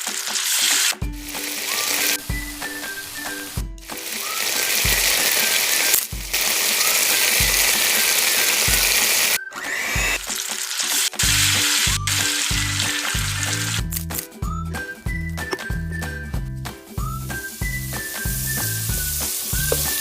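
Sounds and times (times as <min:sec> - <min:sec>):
food sizzling in a pan: 0:00.0 - 0:14.0, 0:17.2 - 0:20.0
music with thumping beat: 0:00.9 - 0:01.6, 0:02.2 - 0:04.2, 0:04.8 - 0:06.6, 0:07.3 - 0:08.0, 0:08.6 - 0:09.2, 0:09.8 - 0:20.0.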